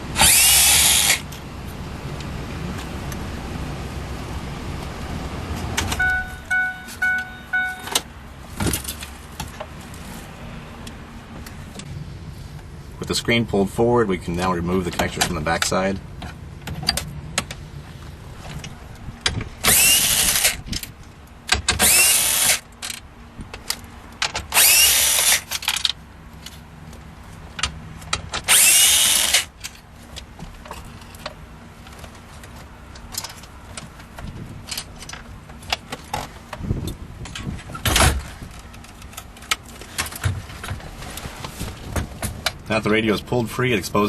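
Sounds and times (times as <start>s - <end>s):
cordless drill running: 0.2s - 1.2s, 19.7s - 20.6s, 21.8s - 22.6s, 24.6s - 25.4s, 28.5s - 29.5s
light clicks and handling noise: 38.5s - 42.6s.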